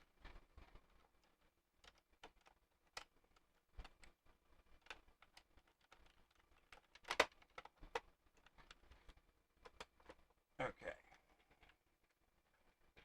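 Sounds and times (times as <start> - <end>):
puzzle box parts clicking: 4.8 - 10.2.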